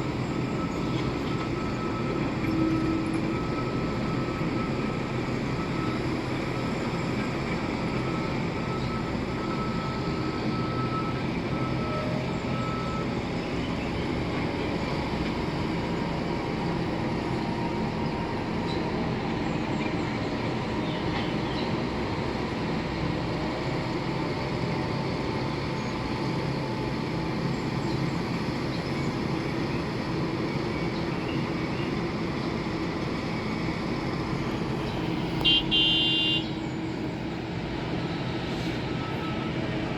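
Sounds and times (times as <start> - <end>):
heavy machinery engines rumbling: 0.0 - 39.9.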